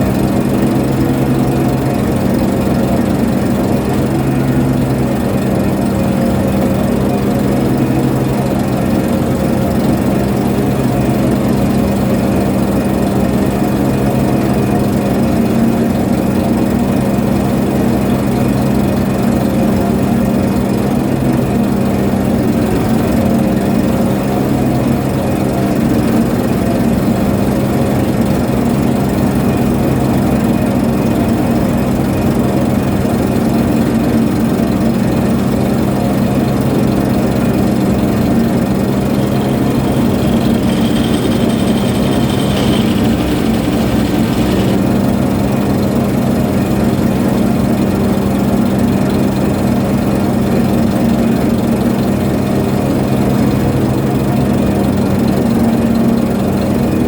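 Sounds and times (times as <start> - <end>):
ship's engine humming: 22.2 - 24.4, 36.0 - 47.5
faint high whine: 37.6 - 46.3.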